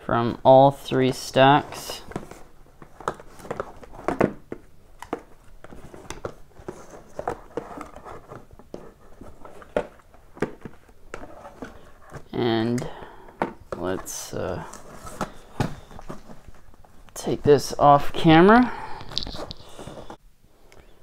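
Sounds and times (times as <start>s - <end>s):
cardboard boxes knocking and rustling: 1.7s - 12.3s, 13.3s - 17.0s.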